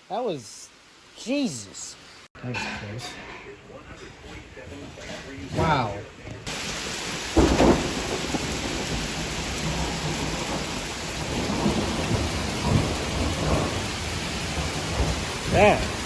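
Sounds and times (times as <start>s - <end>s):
heavy rain pouring: 0.0s - 2.3s, 4.5s - 16.0s
thunder rumbling: 5.5s - 16.0s.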